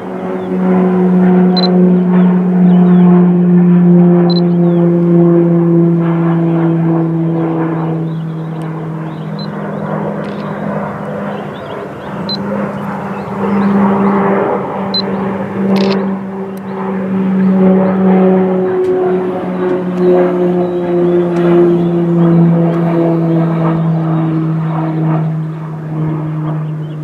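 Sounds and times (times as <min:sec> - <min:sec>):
military aircraft engines droning: 0:00.0 - 0:27.0.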